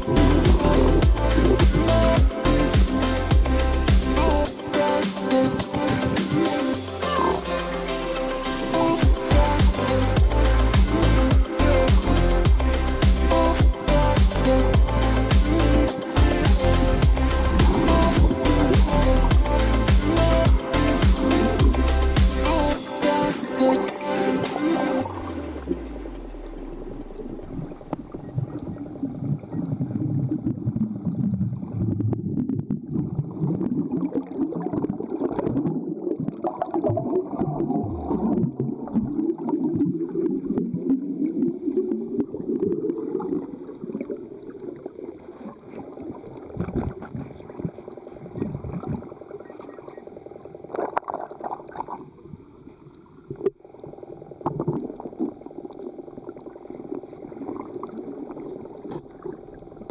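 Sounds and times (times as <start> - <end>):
low underwater rumble: 0.0 - 4.5, 9.1 - 22.8, 25.1 - 59.9
underwater water sloshing and gurgling: 16.8 - 19.7, 23.6 - 59.9.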